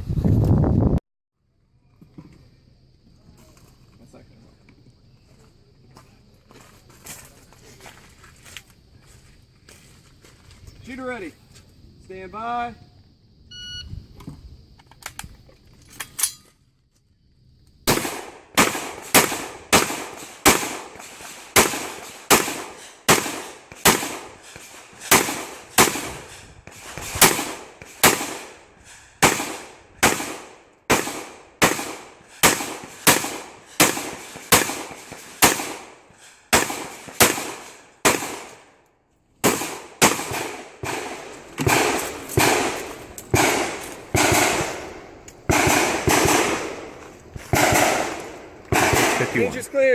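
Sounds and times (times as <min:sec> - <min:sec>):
rifle shots: 0:17.9 - 0:38.7, 0:39.4 - 0:49.9.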